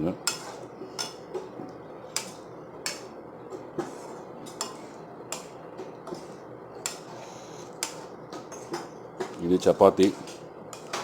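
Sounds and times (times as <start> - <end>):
gravy boiling: 0.0 - 11.0.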